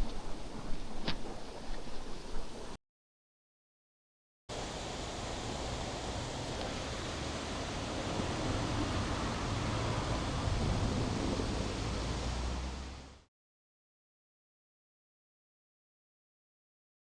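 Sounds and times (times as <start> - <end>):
stream rushing over rocks: 4.5 - 13.3.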